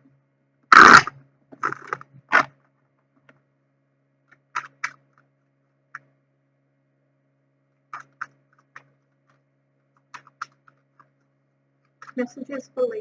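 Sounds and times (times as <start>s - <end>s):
cards shuffling: 0.8s - 2.5s.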